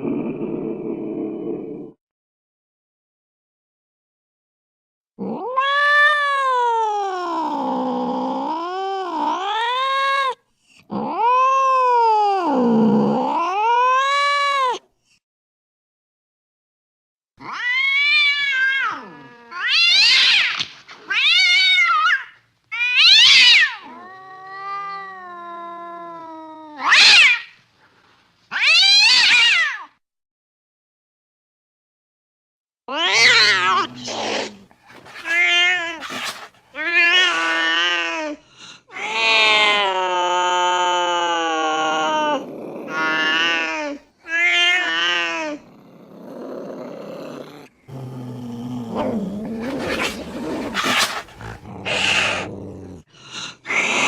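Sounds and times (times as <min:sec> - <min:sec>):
cat yowling and meowing: 0:05.2 - 0:14.8, 0:17.4 - 0:27.6, 0:28.5 - 0:30.0, 0:32.9 - 0:45.7, 0:48.9 - 0:53.1.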